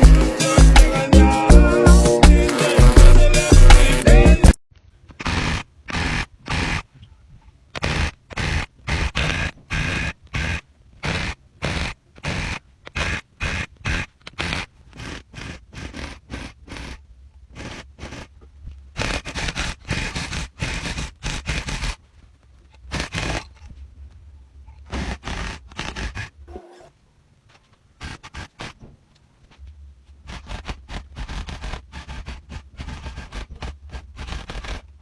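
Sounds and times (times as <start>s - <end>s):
scraping strokes on rug: 5.1s - 7.0s, 7.7s - 18.4s, 19.0s - 22.0s, 24.8s - 26.9s, 27.5s - 28.9s, 29.5s - 35.0s.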